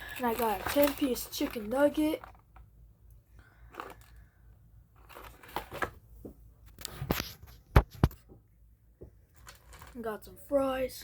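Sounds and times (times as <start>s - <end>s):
paper packaging rustling: 0.0s - 2.7s, 3.7s - 4.2s, 5.0s - 6.0s, 9.3s - 10.0s.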